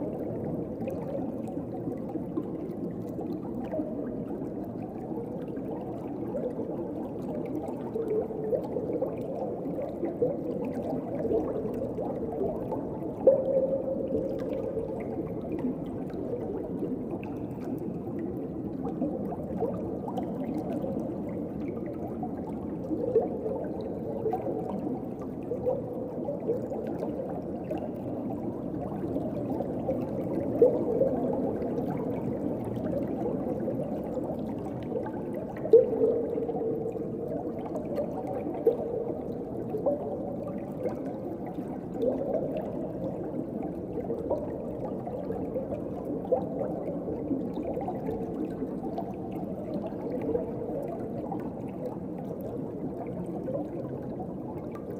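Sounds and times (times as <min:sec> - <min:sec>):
muffled underwater water wash: 0:00.0 - 0:54.9
bubbling blips: 0:08.0 - 0:17.5, 0:35.0 - 0:41.1.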